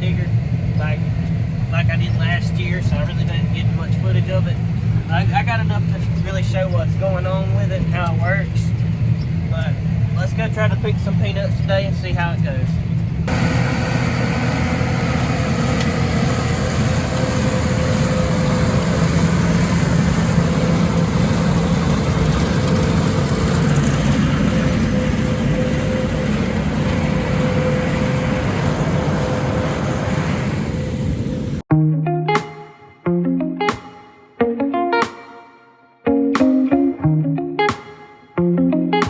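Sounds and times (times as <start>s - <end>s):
tractor engine droning: 0.0s - 31.6s.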